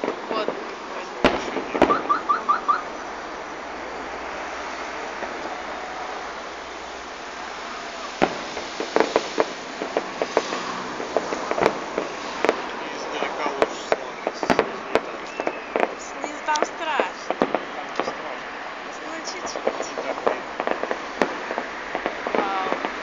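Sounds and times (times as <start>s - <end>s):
firework bangs and pops: 0.0s - 3.0s, 7.7s - 23.0s
firework hiss: 0.0s - 23.0s
short firework whistles: 14.5s - 16.0s.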